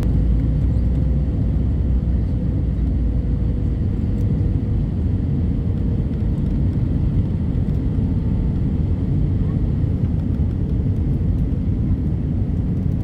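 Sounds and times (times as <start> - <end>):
jet engines rumbling in cabin: 0.0 - 13.0.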